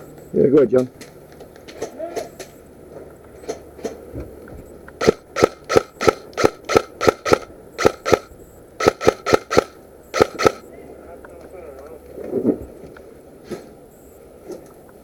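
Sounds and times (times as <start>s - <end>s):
airsoft gun shots: 5.0s - 10.6s.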